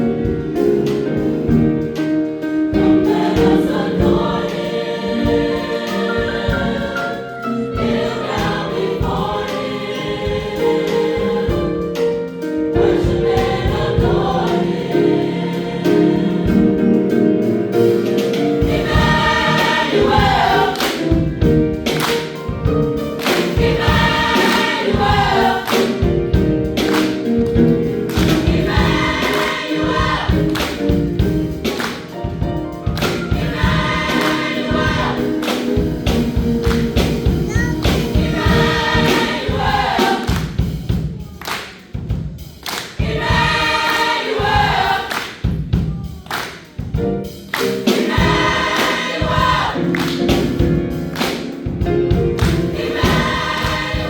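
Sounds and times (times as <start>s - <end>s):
instrumental accompaniment: 0.0s - 54.0s
choir singing: 2.6s - 40.9s, 42.8s - 46.2s, 47.5s - 50.6s, 52.4s - 54.0s
steady beat: 17.8s - 54.0s.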